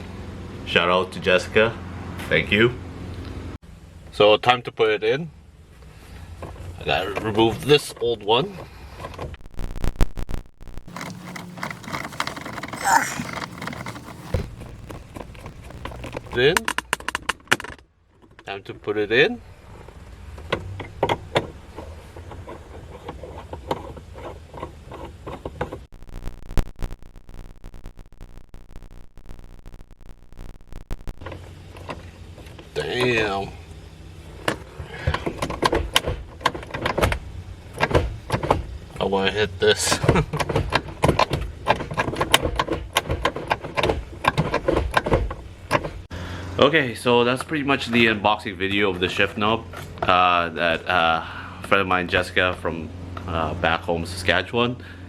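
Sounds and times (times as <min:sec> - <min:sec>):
low hum: 0:14.3 - 0:16.4, 0:25.9 - 0:31.4.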